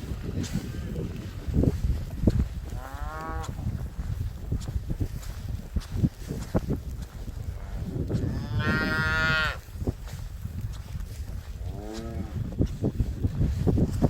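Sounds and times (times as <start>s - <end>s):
cow mooing: 2.8s - 3.5s, 7.6s - 9.6s.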